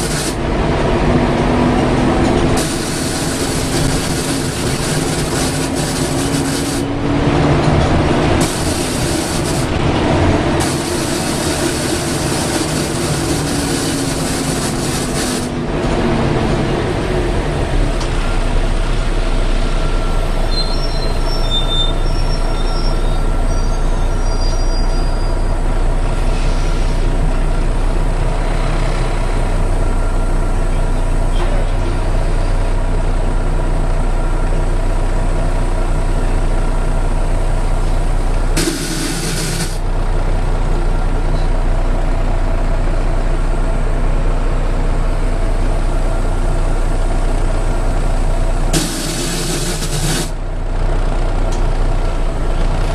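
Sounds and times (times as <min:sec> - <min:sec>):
bus diesel engine running: 0:00.0 - 0:52.9
sharp hiss of air: 0:02.6 - 0:05.2, 0:38.6 - 0:39.8, 0:48.7 - 0:50.4
loud suction noise: 0:02.6 - 0:06.9, 0:08.4 - 0:09.7, 0:10.6 - 0:15.6, 0:38.6 - 0:39.8, 0:48.7 - 0:50.4.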